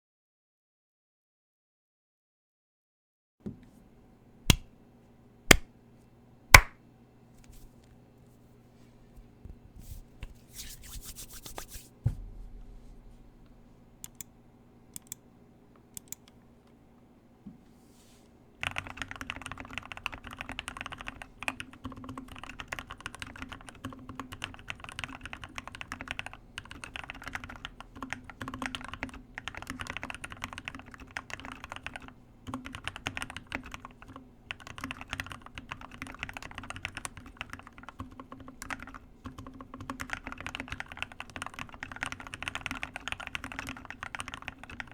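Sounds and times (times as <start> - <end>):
thump: 12.0 - 12.7
mechanical keyboard typing: 14.0 - 14.3, 15.0 - 15.2, 16.0 - 16.4, 18.6 - 44.9.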